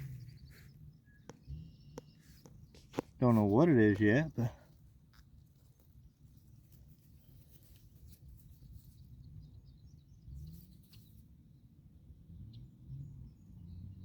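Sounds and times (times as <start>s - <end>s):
distant bird chirps: 0.0s - 4.6s
faint low rumble: 0.0s - 14.0s.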